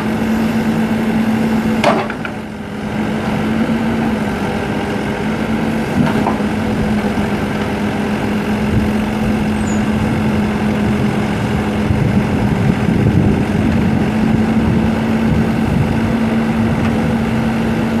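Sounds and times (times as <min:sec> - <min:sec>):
backhoe diesel engine running: 0:00.0 - 0:18.0.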